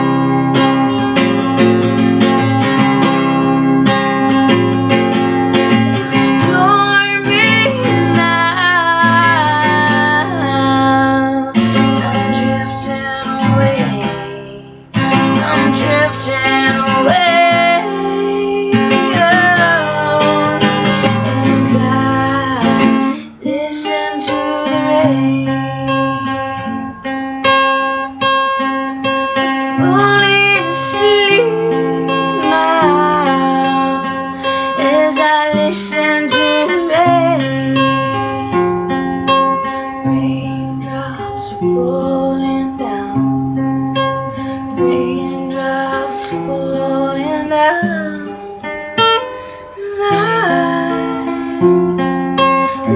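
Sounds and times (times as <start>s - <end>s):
strummed acoustic guitar: 0.0s - 52.9s
woman singing: 4.5s - 26.7s, 29.5s - 38.6s, 39.3s - 52.9s.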